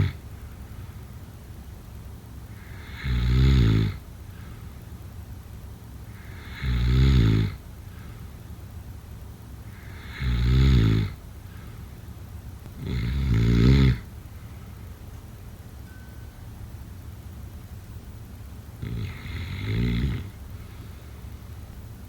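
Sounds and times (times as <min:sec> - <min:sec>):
person snoring: 0:02.6 - 0:04.0, 0:09.8 - 0:11.2, 0:12.8 - 0:14.0, 0:18.8 - 0:20.3.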